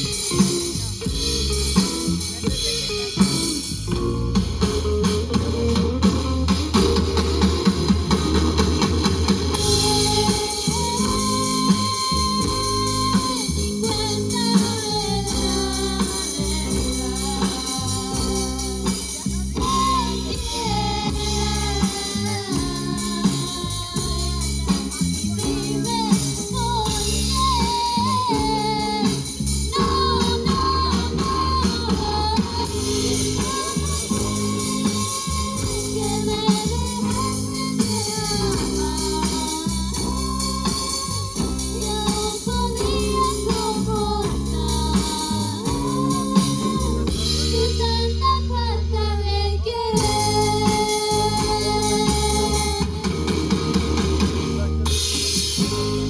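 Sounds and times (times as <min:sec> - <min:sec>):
band music: 0:00.0 - 0:56.0
person singing: 0:09.5 - 0:53.7.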